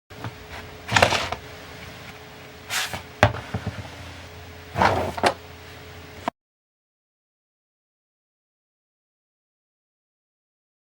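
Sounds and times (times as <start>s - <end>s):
faint steady hum: 0.2s - 6.3s
vacuum nozzle swishing: 2.7s - 3.1s.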